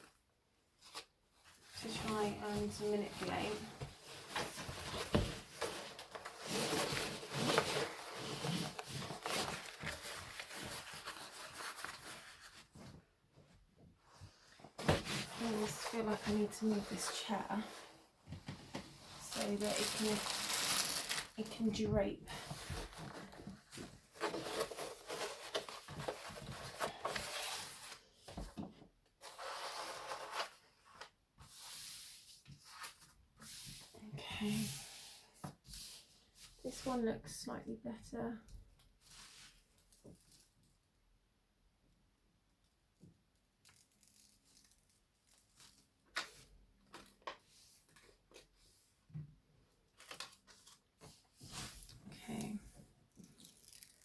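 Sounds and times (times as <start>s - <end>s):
canvas rustling: 19.2s - 21.5s.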